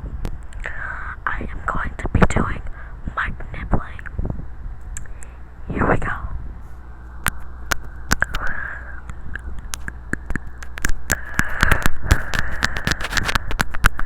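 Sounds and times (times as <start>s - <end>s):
steady low hum: 0.0s - 14.0s
breathy hiss: 0.6s - 1.7s, 2.6s - 3.2s, 7.9s - 9.2s, 11.1s - 13.5s
mouth clicks on microphone: 9.3s - 14.0s.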